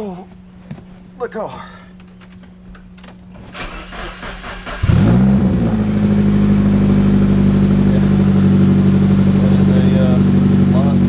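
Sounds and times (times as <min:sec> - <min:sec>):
car engine starting and idling: 0:03.4 - 0:11.0.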